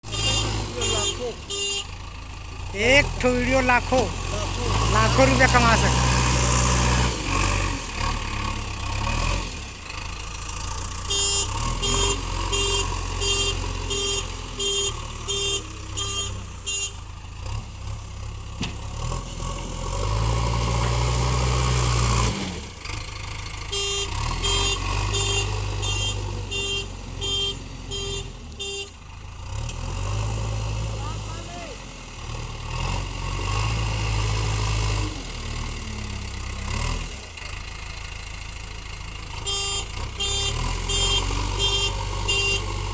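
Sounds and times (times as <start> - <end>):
diesel engine running: 0.0 - 42.9
reversing alarm beeping: 0.1 - 1.4.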